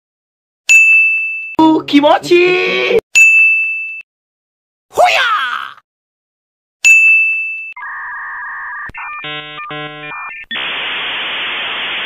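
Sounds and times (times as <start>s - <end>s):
buzzy electronic tones: 7.8s - 12.0s.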